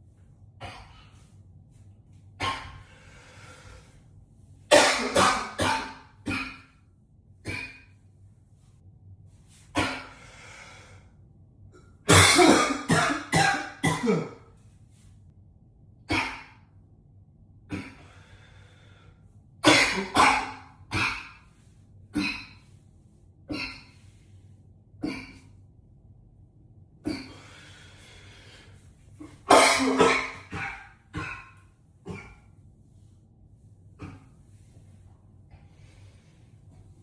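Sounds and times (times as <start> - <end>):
man coughing: 4.7 - 6.7, 12.1 - 14.5, 19.6 - 21.4, 25.0 - 25.5, 29.2 - 32.5.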